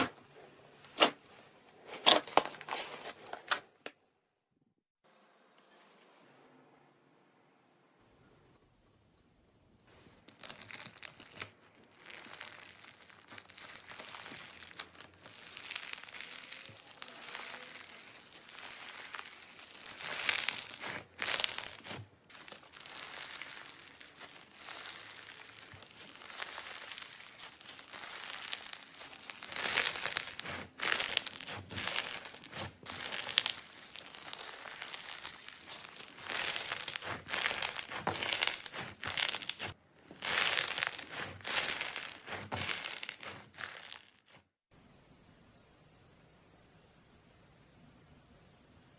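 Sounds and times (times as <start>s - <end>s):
slime squeezed by hand: 10.3s - 44.3s.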